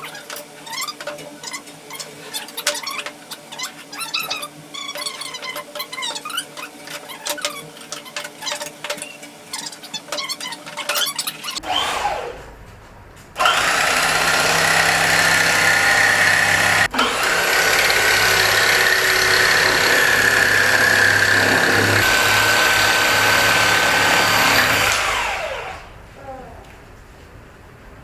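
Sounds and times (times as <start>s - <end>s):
power tool motor whining: 13.4s - 25.7s.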